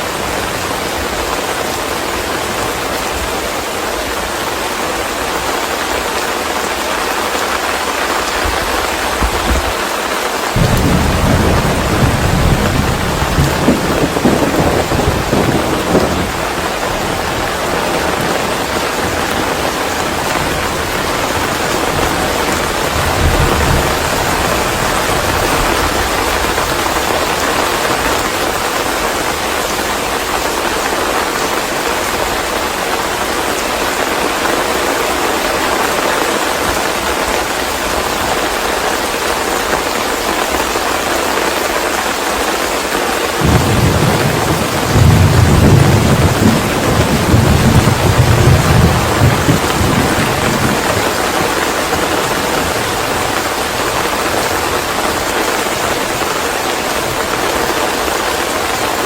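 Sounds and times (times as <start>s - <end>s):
steady rain: 0.0s - 59.0s
thunder rumbling: 8.1s - 30.5s, 43.4s - 57.4s.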